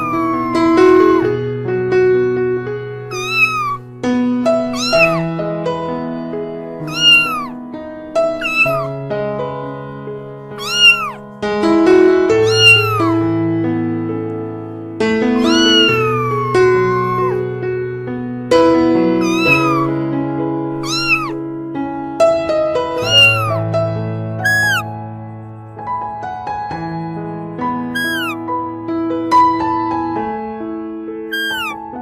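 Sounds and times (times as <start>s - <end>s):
cat meowing: 0.0s - 1.4s, 3.0s - 3.9s, 4.6s - 5.3s, 6.8s - 7.6s, 8.3s - 9.0s, 10.6s - 11.2s, 12.3s - 13.3s, 15.3s - 17.6s, 19.1s - 20.0s, 20.8s - 21.4s, 23.0s - 23.7s, 24.4s - 24.9s, 27.9s - 28.4s, 31.3s - 31.8s
piano music: 0.0s - 32.0s.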